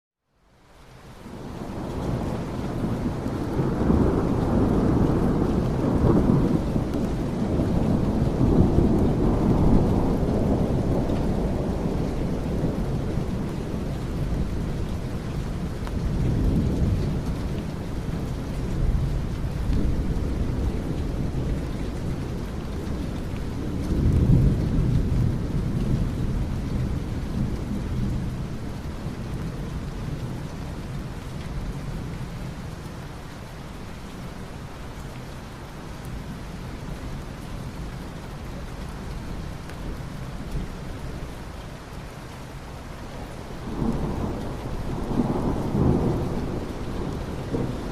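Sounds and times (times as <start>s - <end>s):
steady rain: 0.2s - 47.9s
rolling thunder: 1.3s - 32.5s, 43.5s - 47.9s.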